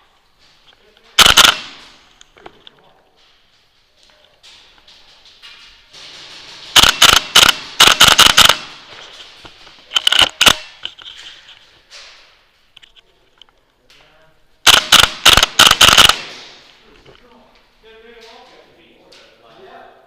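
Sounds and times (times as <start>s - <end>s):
airsoft guns firing: 1.2s - 2.1s, 6.6s - 8.9s, 9.9s - 10.8s, 14.6s - 16.7s.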